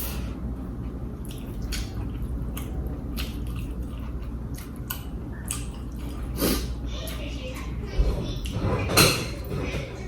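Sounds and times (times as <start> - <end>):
steady low hum: 0.0 - 10.0
crunchy chewing: 1.2 - 7.2.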